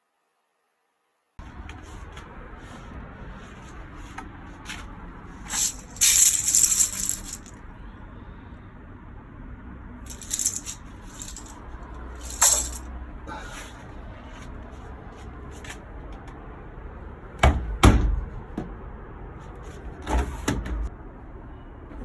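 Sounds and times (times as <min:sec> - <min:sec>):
small hard objects rattling: 0:05.5 - 0:07.5, 0:10.1 - 0:12.8.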